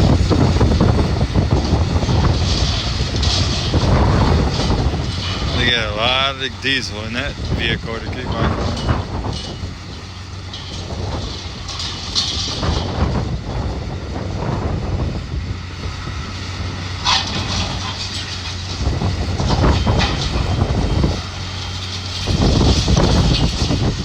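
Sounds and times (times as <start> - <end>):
debris crunching and clattering: 0.0 - 13.9, 16.0 - 24.0
diesel engine running: 0.0 - 24.0.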